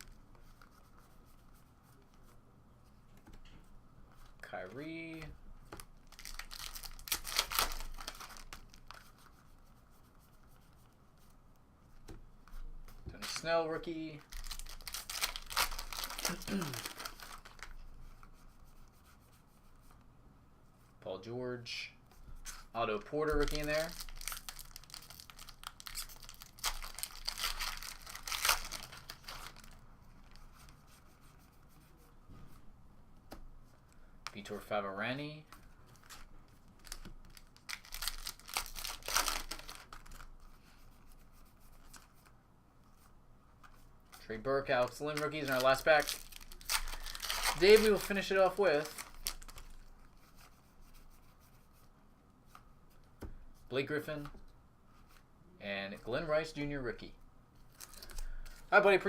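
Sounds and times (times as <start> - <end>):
foil wrapper crinkling and tearing: 6.0 - 9.0, 14.2 - 17.7, 23.4 - 29.8, 36.8 - 40.3, 44.8 - 49.9, 57.7 - 58.4.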